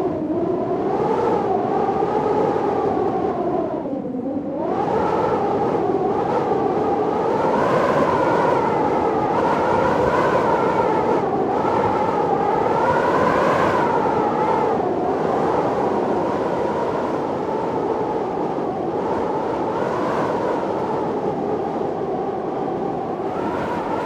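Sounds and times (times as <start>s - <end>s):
storm wind howling: 0.0s - 24.0s.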